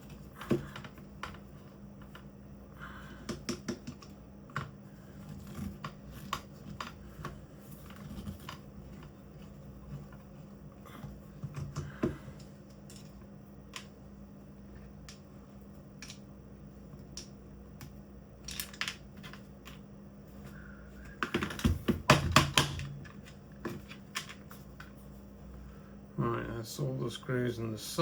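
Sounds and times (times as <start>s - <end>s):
clicking and rattling: 17.1s - 19.9s.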